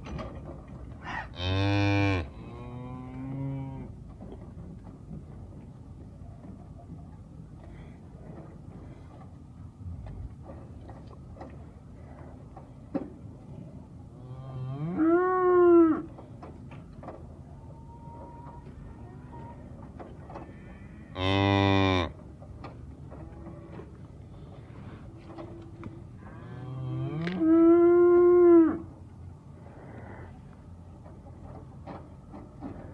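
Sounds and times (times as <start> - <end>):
cows mooing: 1.1 - 3.9, 14.3 - 16.1, 20.5 - 22.2, 26.2 - 28.9.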